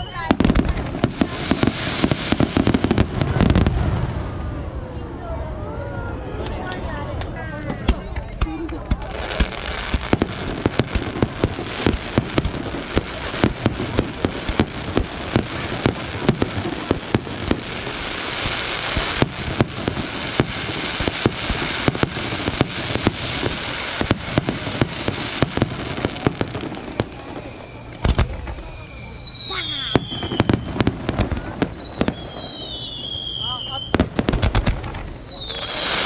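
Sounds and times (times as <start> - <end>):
firework crackling: 0.0 - 36.0
firework shell bursts: 7.8 - 36.0.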